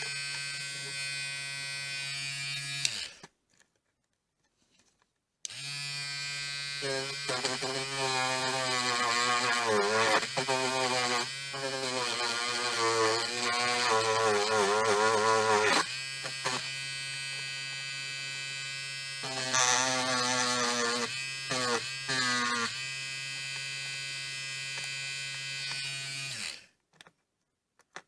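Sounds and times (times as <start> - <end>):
rotary tool motor whine: 5.5 - 26.7.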